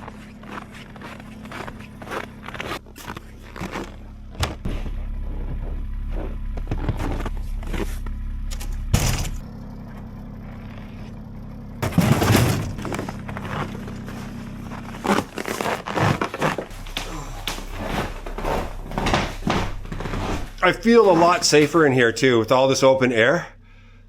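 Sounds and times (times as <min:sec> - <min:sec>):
low steady rumble: 0:00.0 - 0:24.0
scraping and knocking: 0:11.8 - 0:21.8
scraping crash: 0:11.8 - 0:21.8.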